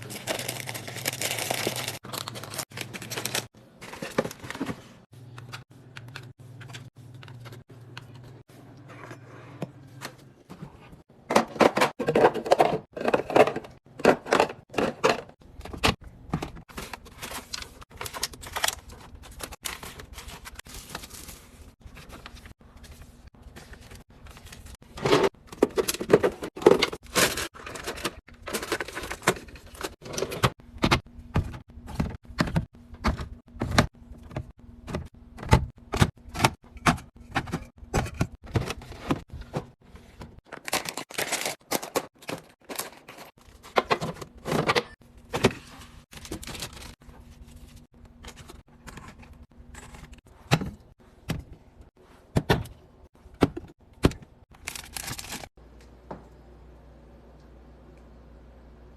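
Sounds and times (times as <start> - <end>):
packaging rustling: 0.0 - 5.0, 40.5 - 43.6.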